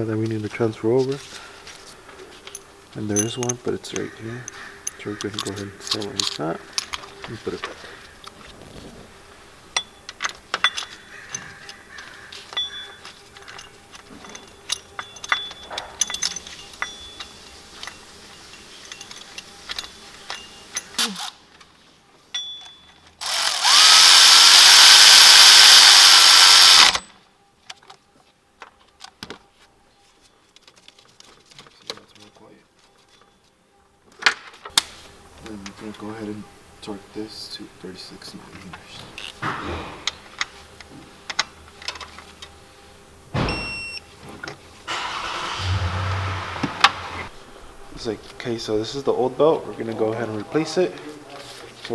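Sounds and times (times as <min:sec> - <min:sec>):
hand tools clinking on metal: 0:02.5 - 0:07.0, 0:12.5 - 0:21.3
cordless power tool spinning: 0:21.0 - 0:21.4, 0:23.2 - 0:27.0.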